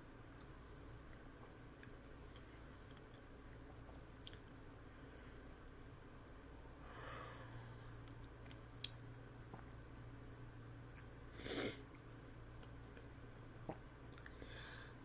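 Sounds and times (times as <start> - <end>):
person breathing: 6.8 - 8.0, 14.3 - 15.0.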